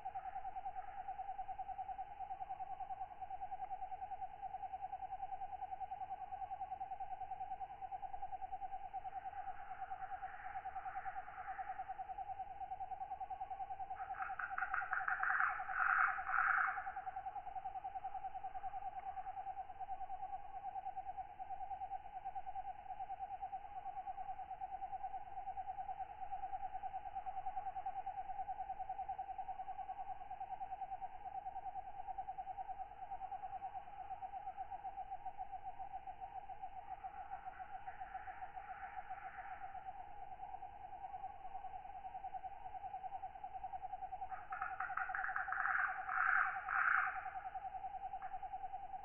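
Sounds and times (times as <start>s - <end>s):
katydid chorus trilling: 7.2s - 21.0s, 23.0s - 49.0s
loud katydid call: 13.6s - 19.3s, 42.9s - 49.0s.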